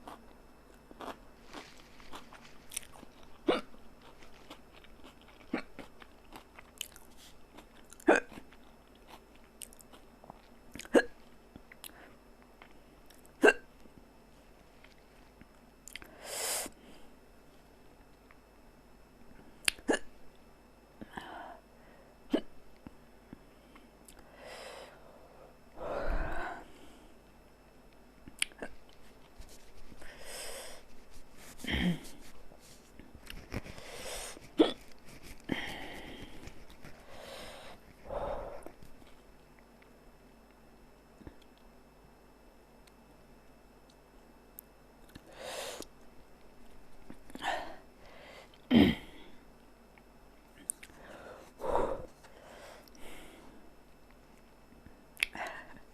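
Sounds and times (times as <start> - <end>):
woman hiccuping: 3.4 - 3.8, 8.0 - 8.4, 10.8 - 11.2, 13.4 - 13.7, 19.7 - 20.1
breathy exhales: 51.0 - 53.6.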